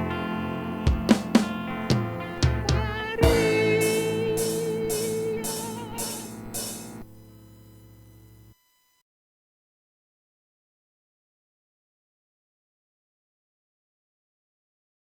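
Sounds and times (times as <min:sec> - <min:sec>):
cymbal crashes: 0:00.9 - 0:07.0
rock song on drums and guitar: 0:00.9 - 0:07.0.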